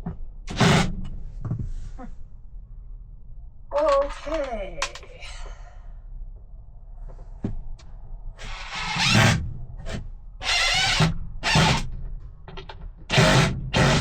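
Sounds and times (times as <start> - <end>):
power drill driving into wood: 8.4 - 11.9, 13.1 - 14.0.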